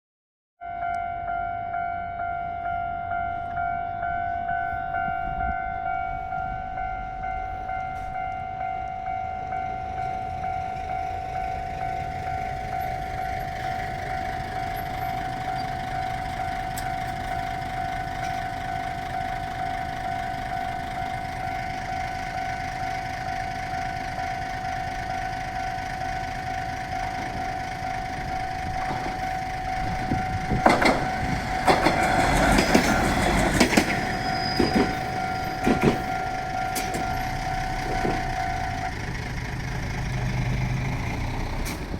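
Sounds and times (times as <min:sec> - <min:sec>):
level-crossing warning bell ringing: 0:00.6 - 0:41.2
train wheels clattering: 0:29.9 - 0:38.4.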